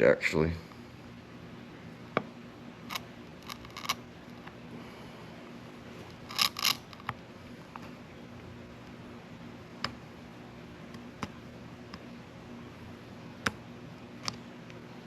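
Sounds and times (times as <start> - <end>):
faint steady hum: 0.0 - 15.0
hand tools clicking and scraping: 3.4 - 4.0, 6.2 - 7.1.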